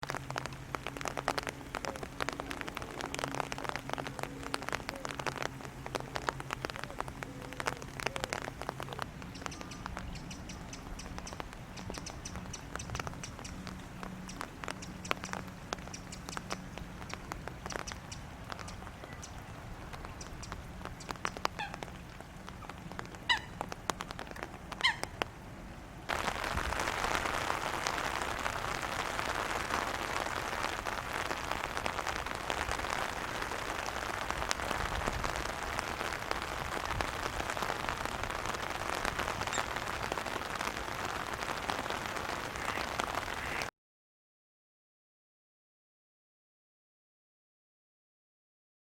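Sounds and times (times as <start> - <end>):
fish popping and splashing: 0.0 - 25.3
short bird calls: 22.6 - 23.6, 24.8 - 25.2.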